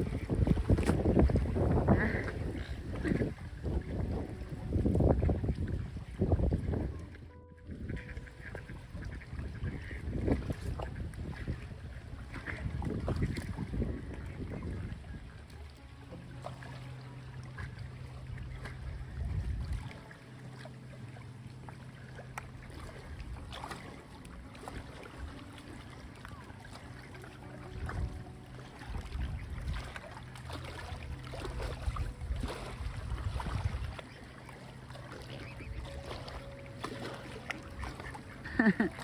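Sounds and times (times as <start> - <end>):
wind buffeting microphone: 0.0 - 16.4, 17.3 - 20.5, 27.4 - 34.4.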